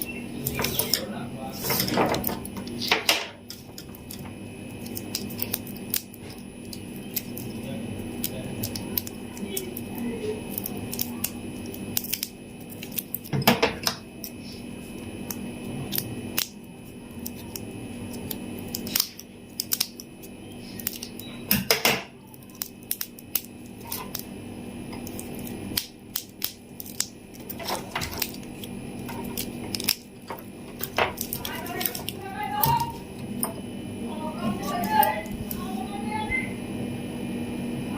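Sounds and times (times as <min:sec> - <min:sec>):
faint steady hum: 0:00.0 - 0:37.9
plastic wrappers crinkling: 0:26.2 - 0:33.0.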